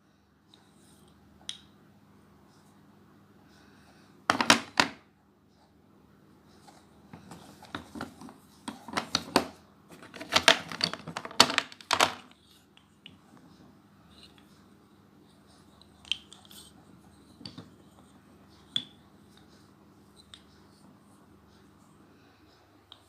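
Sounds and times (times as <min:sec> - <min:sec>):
packaging rustling: 0:09.9 - 0:12.3.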